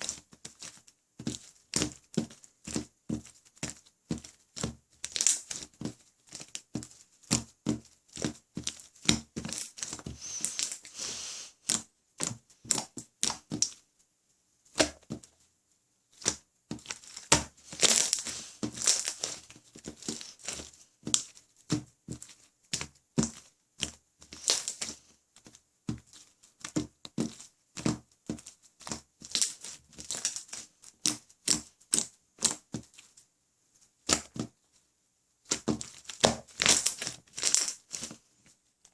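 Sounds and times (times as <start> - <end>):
slime squished by hand: 11.6 - 13.8, 16.2 - 25.0, 35.5 - 38.2.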